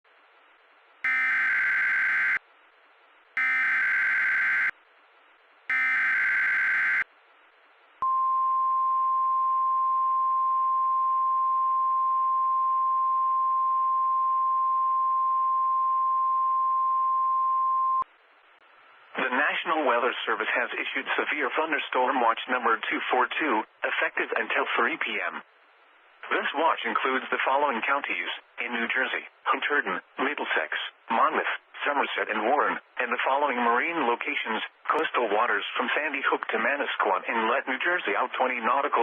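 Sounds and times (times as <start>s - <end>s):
steady alert tone: 1.0s - 2.4s, 3.4s - 4.7s, 5.7s - 7.0s
warbling digital data tones: 1.1s - 2.4s, 3.4s - 4.7s, 5.7s - 7.0s.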